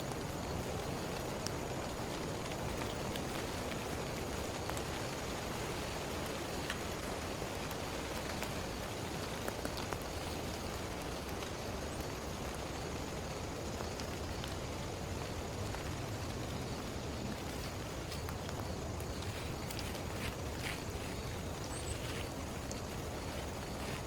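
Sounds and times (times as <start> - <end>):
heavy rain hissing: 0.0 - 24.0
raindrops ticking close by: 0.0 - 24.0.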